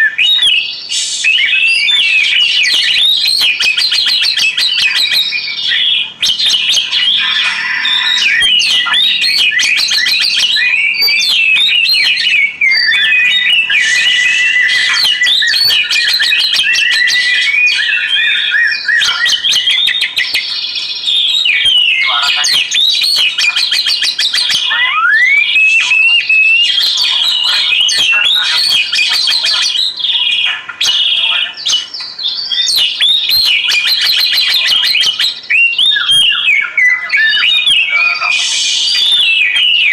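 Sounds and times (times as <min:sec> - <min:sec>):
songbird singing whistles and trills: 0:00.0 - 0:39.9.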